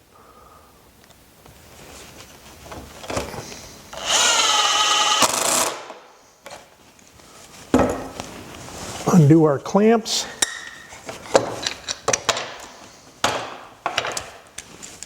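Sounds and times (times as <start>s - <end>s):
power drill motor whine: 3.9s - 6.0s.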